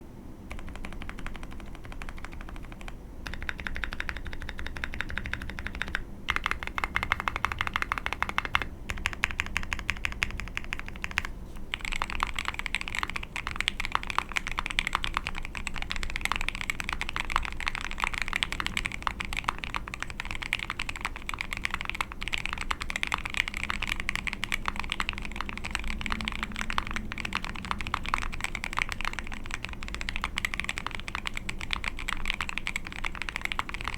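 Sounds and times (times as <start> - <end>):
mechanical keyboard typing: 0.5 - 33.9.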